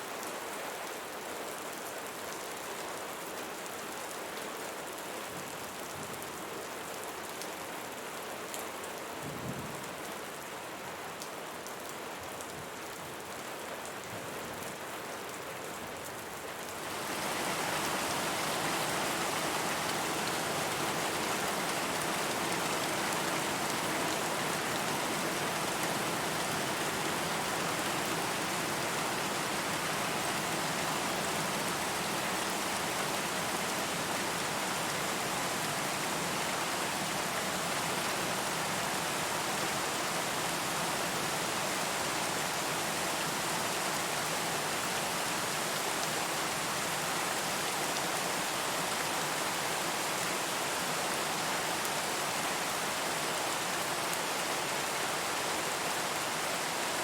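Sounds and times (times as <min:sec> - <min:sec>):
rain drops pattering: 0:16.0 - 0:54.9.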